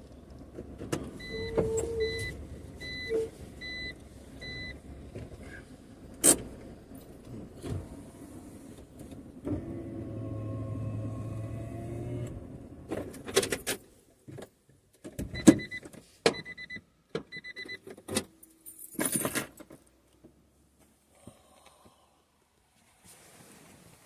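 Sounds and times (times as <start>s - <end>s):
car engine starting and running: 0.0s - 14.1s.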